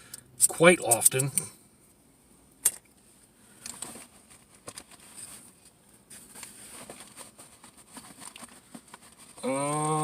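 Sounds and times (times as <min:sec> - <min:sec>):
rustling: 0:03.5 - 0:09.5.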